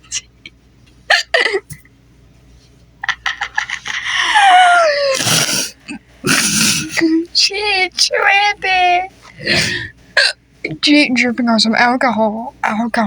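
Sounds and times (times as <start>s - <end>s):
person hiccuping: 1.1s - 1.8s, 5.0s - 7.0s, 9.4s - 10.4s
loud breathy burst: 5.2s - 7.0s.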